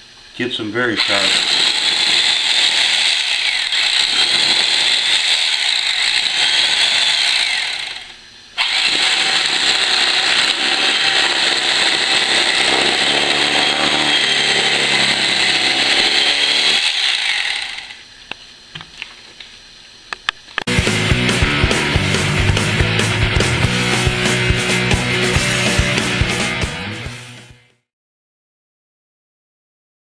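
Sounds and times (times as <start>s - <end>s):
electric carving knife running: 1.0s - 18.0s.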